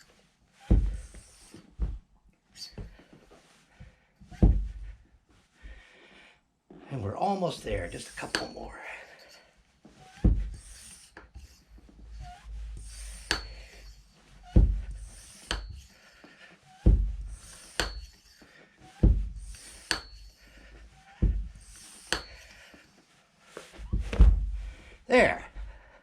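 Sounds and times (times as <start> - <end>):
hand pump low thump: 0.6 - 2.0, 4.3 - 5.0, 8.1 - 8.6, 10.0 - 16.0, 16.7 - 20.3, 21.0 - 22.6, 23.8 - 24.9
pump rubbing: 0.6 - 2.0, 7.7 - 9.3, 9.9 - 24.8.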